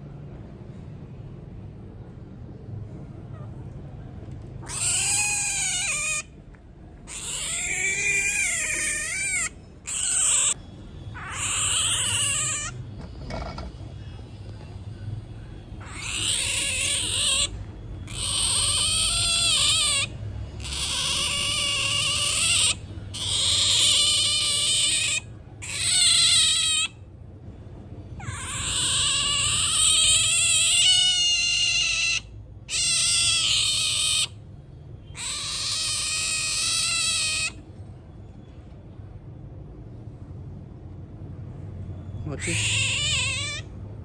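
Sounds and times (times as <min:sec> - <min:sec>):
otter squealing: 0:04.6 - 0:06.4, 0:07.1 - 0:13.6, 0:15.8 - 0:27.1, 0:28.2 - 0:34.4, 0:35.1 - 0:37.7, 0:42.2 - 0:43.8.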